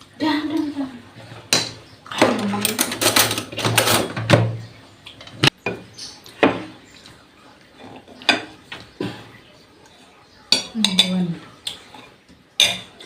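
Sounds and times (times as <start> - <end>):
plates and cutlery clattering: 1.3 - 6.8, 10.5 - 13.0.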